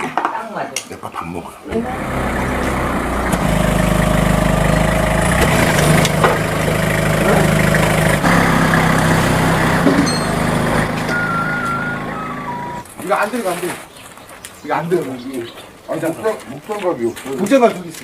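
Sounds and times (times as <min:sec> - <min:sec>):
engine running: 0:01.7 - 0:12.9
short electronic beeps: 0:11.1 - 0:12.8.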